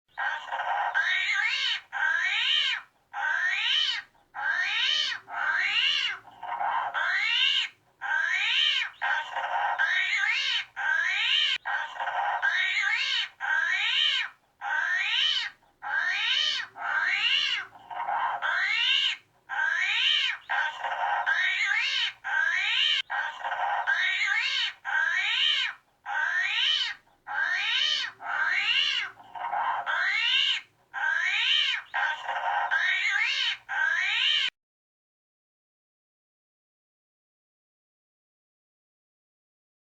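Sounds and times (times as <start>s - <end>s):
armadillo squealing: 4.4s - 34.2s.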